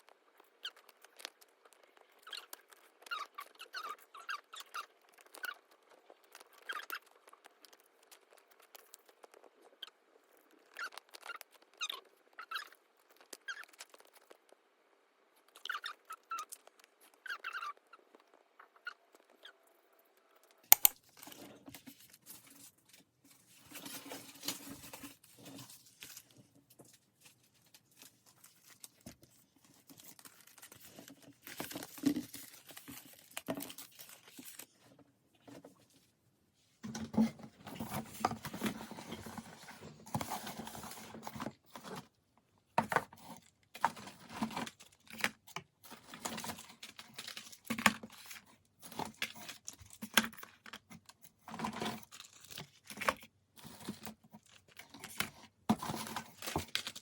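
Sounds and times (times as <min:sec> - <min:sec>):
packaging crinkling and tearing: 0:20.4 - 0:34.8, 0:43.8 - 0:57.0.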